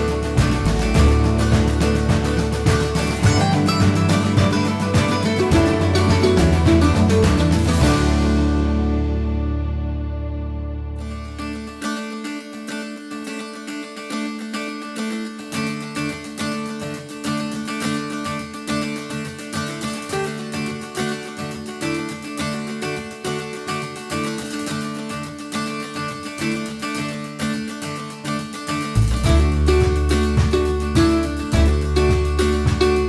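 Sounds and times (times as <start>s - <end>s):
heavy loud bass: 0.0s - 11.6s, 29.0s - 33.0s
bass line: 0.0s - 11.8s, 29.0s - 33.0s
plucked acoustic guitar: 0.0s - 33.0s
strummed guitar rhythm: 0.0s - 33.0s.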